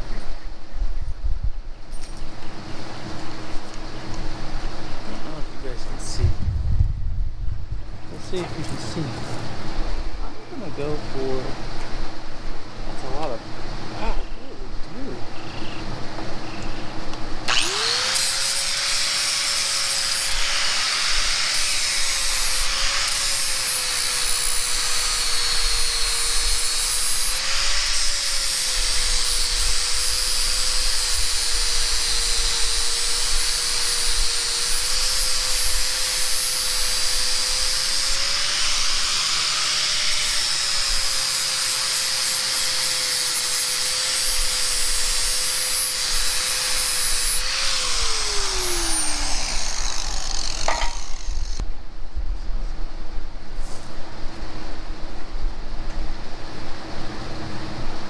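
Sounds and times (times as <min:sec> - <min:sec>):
grinder grinding metal: 0:17.5 - 0:51.6.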